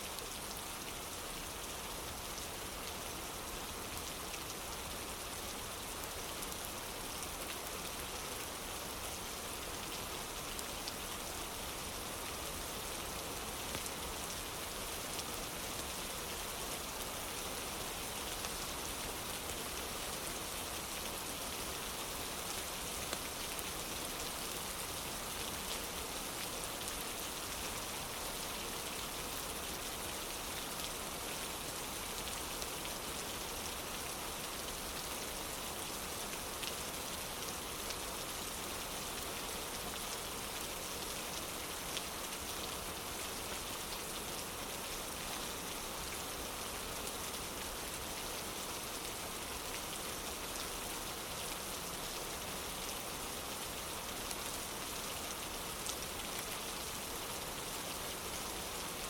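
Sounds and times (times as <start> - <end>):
rain on a wooden porch: 0.0 - 59.0.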